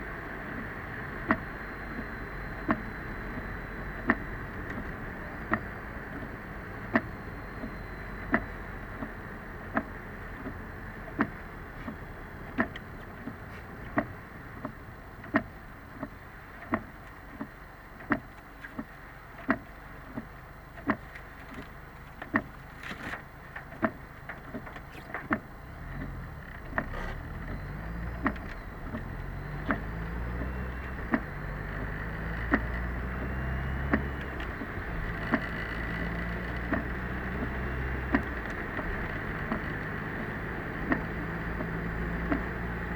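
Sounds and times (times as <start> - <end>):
car engine: 0.0 - 42.9
road noise: 0.0 - 42.9
windscreen wipers knocking: 0.0 - 42.9
heavy rain on car: 25.3 - 42.9.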